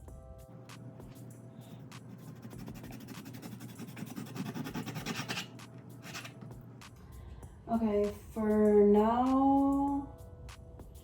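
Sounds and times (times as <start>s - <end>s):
knife sawing through pork skin: 2.2s - 6.4s.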